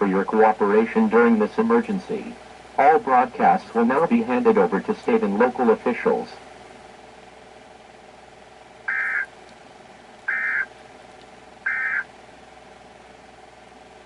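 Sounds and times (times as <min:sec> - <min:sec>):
low hum: 0:00.0 - 0:13.3
digital data tone bursts: 0:08.9 - 0:09.3, 0:10.3 - 0:10.7, 0:11.7 - 0:12.1.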